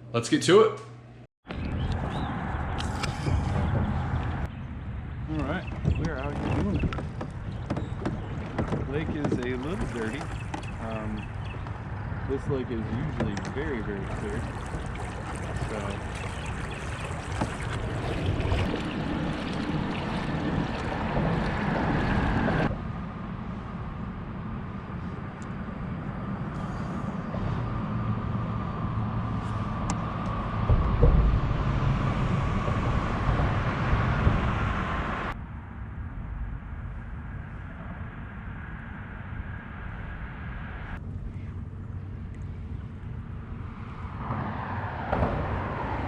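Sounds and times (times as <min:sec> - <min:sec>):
wind: 0:00.0 - 0:46.0
water noise: 0:01.4 - 0:35.4.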